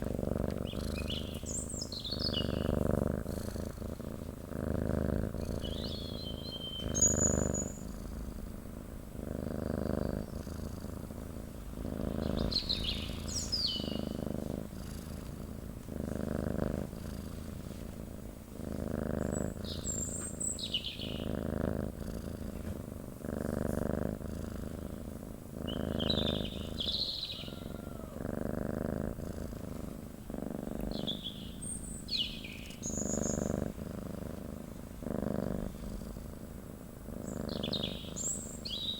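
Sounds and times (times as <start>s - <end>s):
birds chirping: 0.0s - 3.8s, 5.2s - 8.0s, 9.6s - 10.7s, 11.4s - 15.2s, 19.2s - 21.3s, 25.7s - 28.2s, 30.7s - 33.6s, 37.2s - 38.9s
cat purring: 0.0s - 38.9s.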